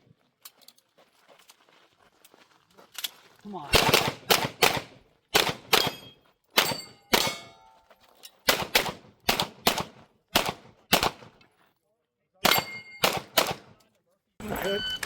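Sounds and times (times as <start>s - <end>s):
pistol shots: 3.7s - 7.6s, 8.5s - 11.4s, 12.4s - 13.8s
steel targets ringing: 5.8s - 7.8s, 12.5s - 13.0s.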